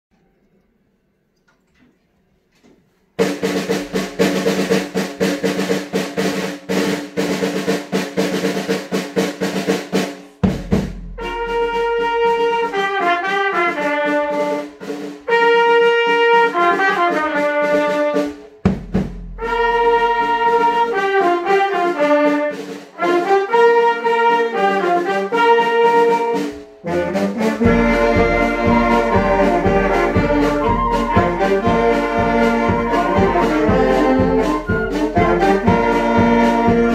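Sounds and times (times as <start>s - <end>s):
low drum strokes: 3.2s - 12.5s, 18.3s - 20.9s, 26.2s - 36.9s
brass band melody: 3.2s - 36.9s
snare drum roll: 3.2s - 36.9s.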